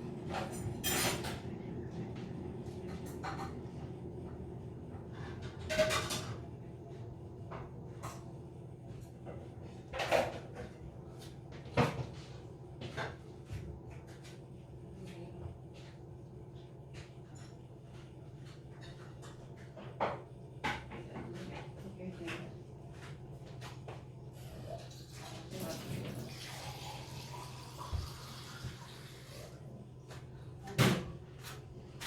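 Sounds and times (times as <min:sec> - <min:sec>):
kitchen knocks and clatters: 0:00.3 - 0:01.5, 0:02.8 - 0:03.8, 0:04.9 - 0:06.5, 0:09.0 - 0:14.4, 0:16.9 - 0:24.1, 0:30.1 - 0:32.0.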